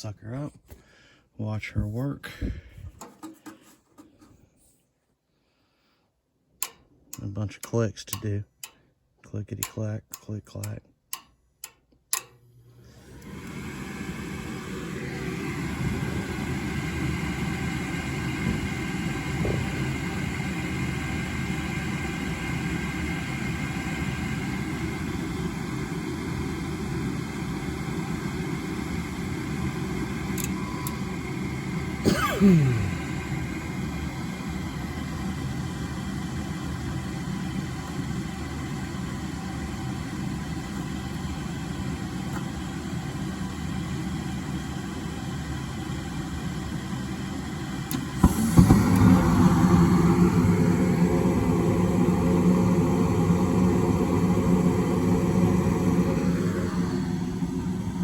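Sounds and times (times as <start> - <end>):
relay clicks: 10.6 - 12.4
furnace motor humming: 12.1 - 58.0.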